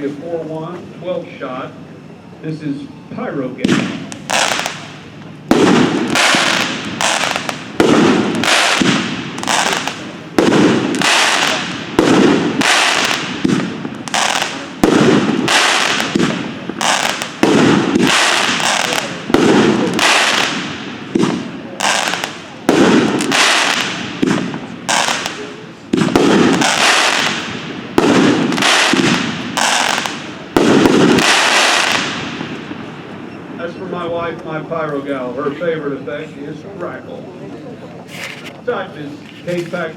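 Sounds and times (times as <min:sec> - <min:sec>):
firework crackling: 0:03.5 - 0:33.2
firework bangs: 0:03.6 - 0:33.4.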